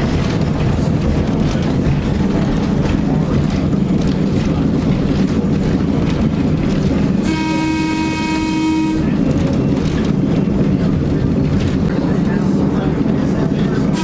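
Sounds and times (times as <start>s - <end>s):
train wheels rumbling on rails: 0.0s - 14.0s
locomotive horn blast: 7.2s - 9.3s.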